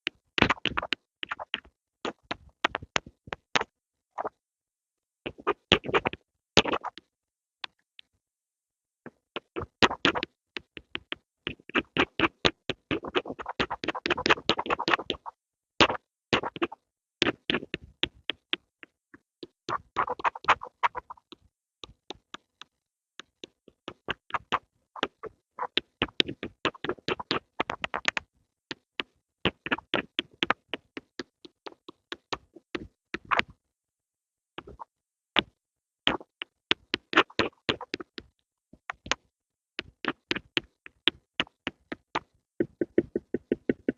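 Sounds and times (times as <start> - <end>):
pencil tapping: 39.8 - 43.9.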